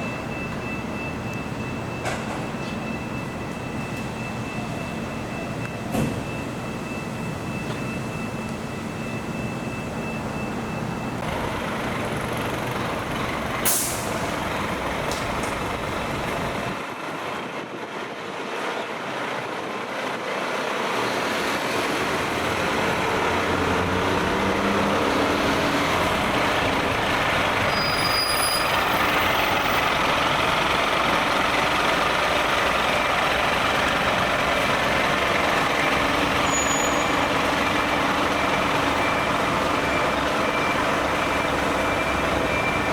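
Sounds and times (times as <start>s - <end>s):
diesel engine running: 0.0s - 18.0s, 21.7s - 42.9s
air brake hiss: 13.6s - 14.3s.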